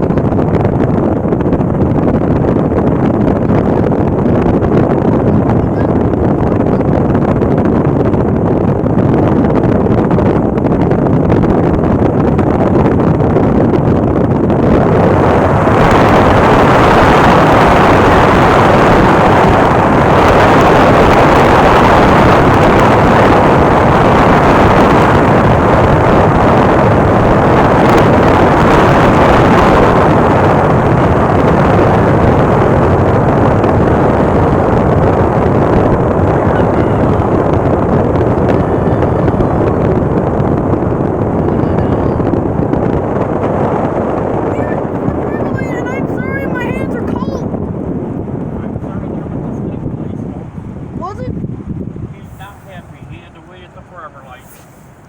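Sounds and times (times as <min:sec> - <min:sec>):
wind buffeting microphone: 0:00.0 - 0:55.0
vehicle rushing noise: 0:12.0 - 0:55.0.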